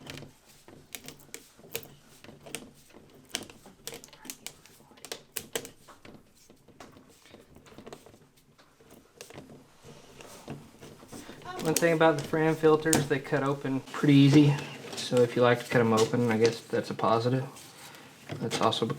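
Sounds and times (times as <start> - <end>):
oil filter can being cut: 10.2 - 14.4.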